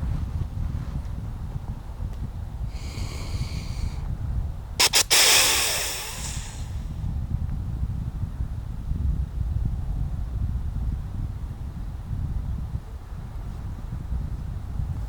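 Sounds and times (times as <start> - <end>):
wind rumble: 0.0 - 15.0
deer snort-wheeze: 2.7 - 4.0, 4.8 - 6.9.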